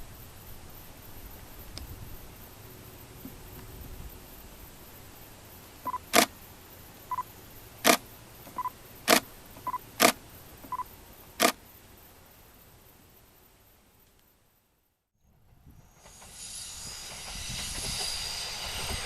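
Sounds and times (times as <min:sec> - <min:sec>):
faint background noise: 0:00.0 - 0:16.2
camera focus double beep: 0:05.9 - 0:06.3, 0:07.9 - 0:11.6
camera shutter click: 0:06.0 - 0:06.3, 0:10.0 - 0:10.2.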